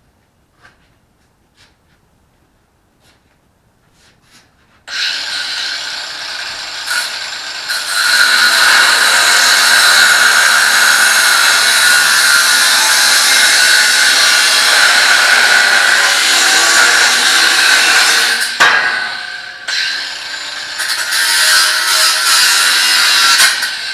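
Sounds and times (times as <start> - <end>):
angle grinder cutting steel: 4.9 - 23.9.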